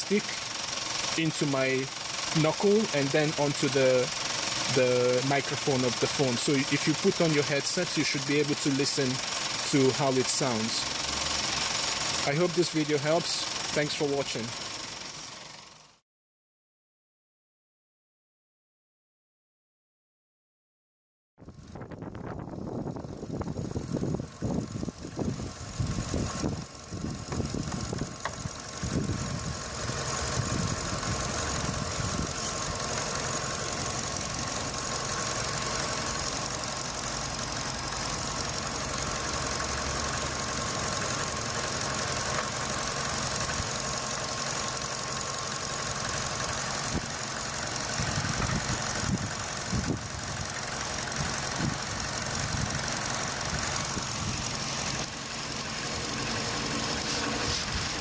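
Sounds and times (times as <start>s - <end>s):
car engine idling: 0.0s - 16.0s, 21.5s - 58.0s
irregular rattle: 23.3s - 58.0s.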